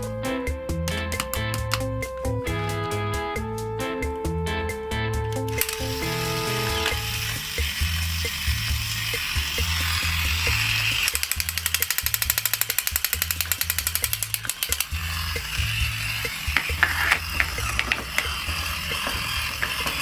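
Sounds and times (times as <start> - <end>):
background music with bassline: 0.0 - 20.0
ratchet-like clicks: 0.9 - 2.2, 5.4 - 20.0.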